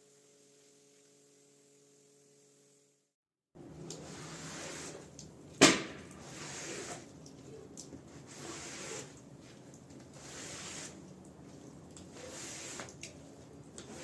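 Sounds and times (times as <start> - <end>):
wet rug scraping swishes: 4.0 - 5.1, 6.2 - 7.1, 8.1 - 14.0.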